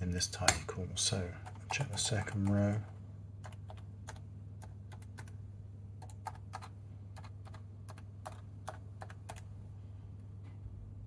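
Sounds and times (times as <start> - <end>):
laptop keys clicking: 3.4 - 5.4, 6.0 - 9.5.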